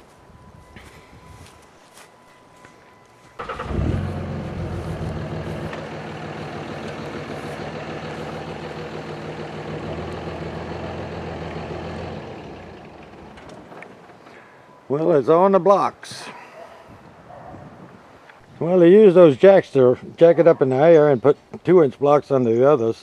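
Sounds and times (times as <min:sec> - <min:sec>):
engine running: 0:03.4 - 0:14.8.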